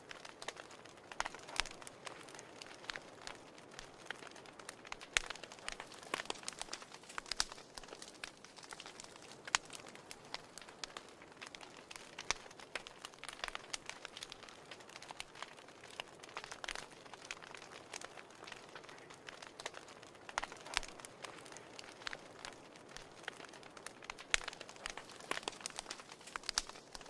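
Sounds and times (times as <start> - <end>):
wood fire crackling and popping: 0.0 - 27.0
fire hissing: 0.1 - 15.1, 20.4 - 27.0.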